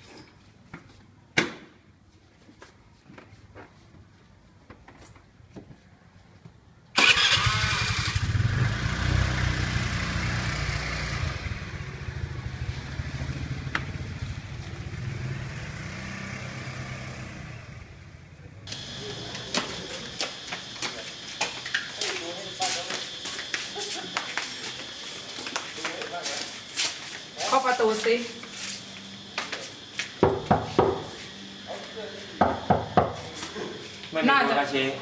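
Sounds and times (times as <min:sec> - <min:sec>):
engine running with low rumble: 0:08.1 - 0:21.8.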